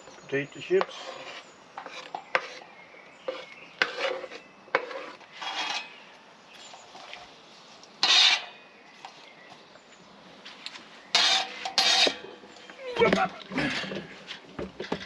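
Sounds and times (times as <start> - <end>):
utensil scraping pan: 0.6 - 7.1, 8.0 - 8.6, 11.1 - 15.0.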